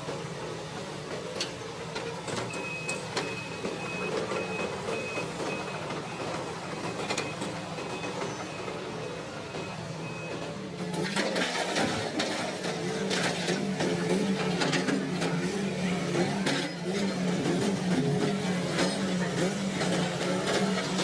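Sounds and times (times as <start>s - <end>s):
excavator engine running: 0.0s - 21.0s.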